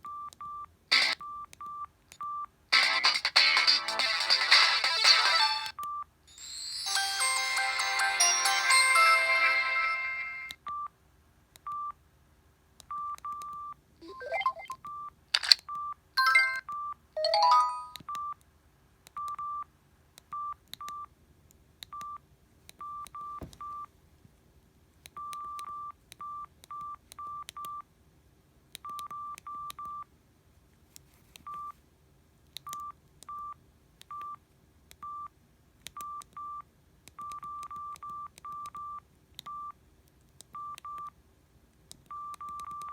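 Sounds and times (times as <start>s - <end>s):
phone keypad beeps: 11.6s - 12.0s, 12.9s - 18.4s, 19.2s - 19.7s, 21.9s - 22.2s, 22.8s - 23.9s, 25.2s - 27.8s, 28.8s - 30.1s, 32.6s - 34.4s, 35.9s - 36.6s, 37.2s - 39.8s, 40.6s - 41.1s, 42.1s - 42.9s.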